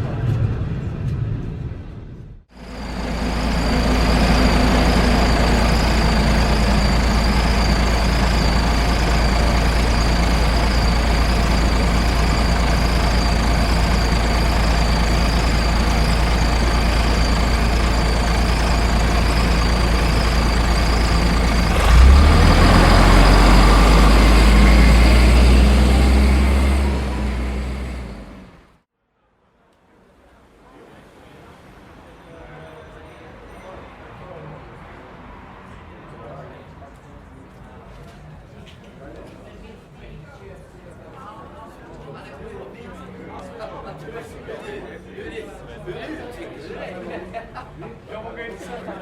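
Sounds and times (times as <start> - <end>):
heavy vehicle engine rumbling: 0.0 - 28.8
thin steady whine: 2.6 - 22.0.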